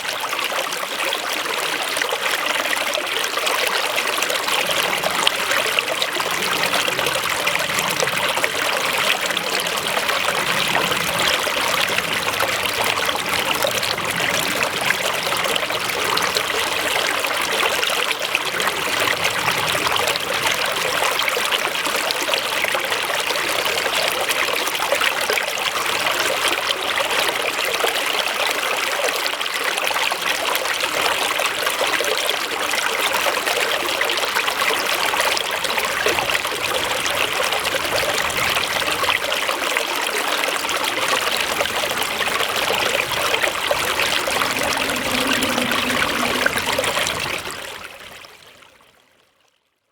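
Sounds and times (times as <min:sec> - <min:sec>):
small stream trickling: 0:00.0 - 0:49.6.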